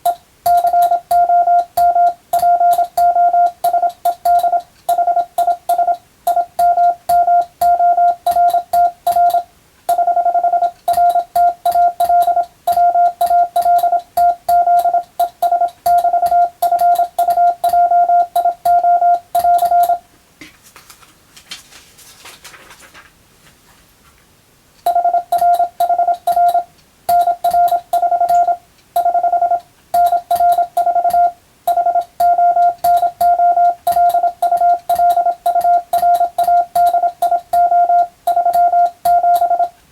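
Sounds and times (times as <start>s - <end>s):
morse code beeps: 0.0s - 20.0s, 24.9s - 39.8s
telegraph key clicks: 30.0s - 39.8s.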